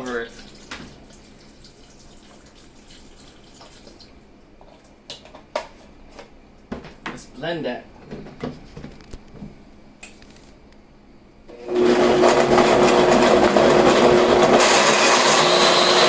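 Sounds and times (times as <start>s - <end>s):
blender running: 11.5s - 16.0s.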